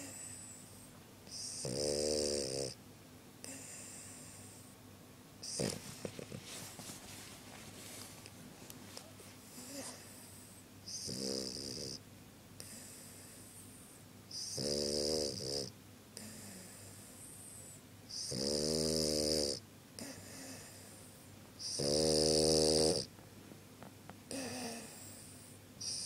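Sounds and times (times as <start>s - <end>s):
dog snoring: 0.0s - 2.8s, 3.4s - 4.7s, 5.4s - 6.6s, 9.4s - 12.0s, 12.6s - 23.1s, 24.3s - 26.0s.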